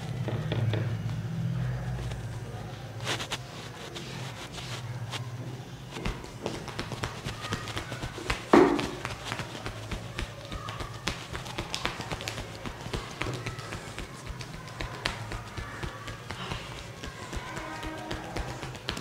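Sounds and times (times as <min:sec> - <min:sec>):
hands tapping on head: 0:05.9 - 0:19.0.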